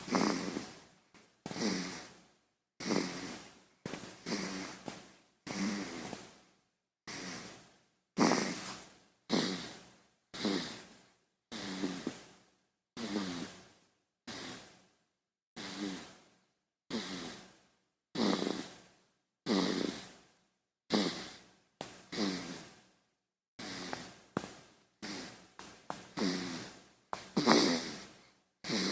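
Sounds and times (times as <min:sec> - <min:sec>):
baby snoring: 0:00.0 - 0:00.8, 0:01.5 - 0:02.2, 0:02.8 - 0:04.9, 0:05.5 - 0:06.3, 0:07.1 - 0:07.6, 0:08.2 - 0:12.3, 0:13.0 - 0:13.6, 0:14.3 - 0:14.8, 0:15.6 - 0:16.2, 0:16.9 - 0:17.6, 0:18.2 - 0:18.8, 0:19.4 - 0:20.2, 0:20.9 - 0:21.5, 0:22.1 - 0:22.8, 0:23.6 - 0:24.2, 0:25.0 - 0:28.9.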